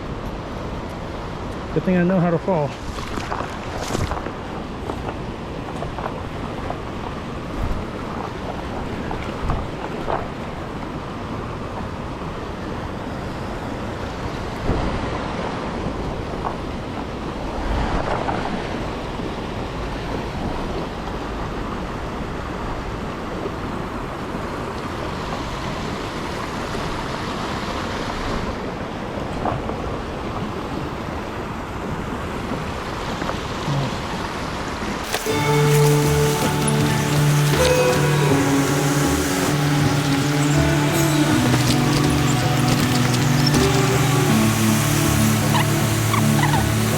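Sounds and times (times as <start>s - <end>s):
flowing creek water: 21.0s - 46.9s.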